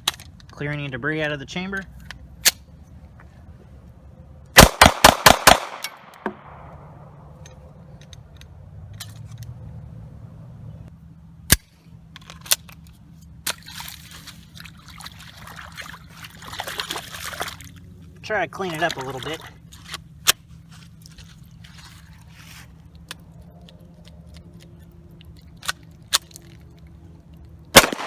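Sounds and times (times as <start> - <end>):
pistol metallic clicks: 4.6 - 6.8, 11.4 - 13.6, 23.0 - 28.0
pistol shots echoing: 4.6 - 6.8, 27.8 - 28.0.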